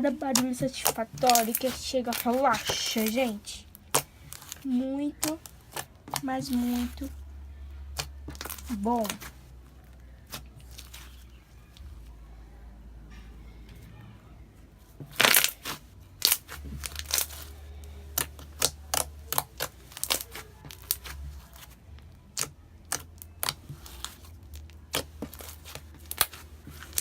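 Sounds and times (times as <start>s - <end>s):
slime clicking and popping: 0.1s - 7.1s, 7.9s - 9.3s, 15.1s - 17.5s, 18.1s - 27.0s.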